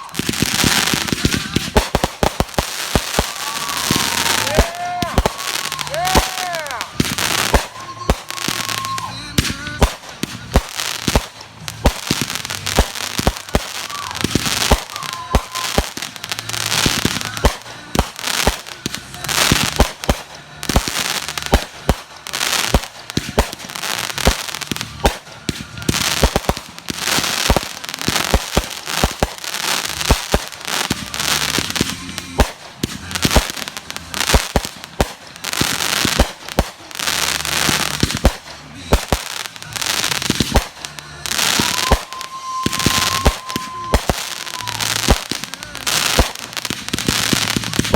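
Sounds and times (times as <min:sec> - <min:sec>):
fireworks banging and crackling: 0:00.0 - 0:47.9.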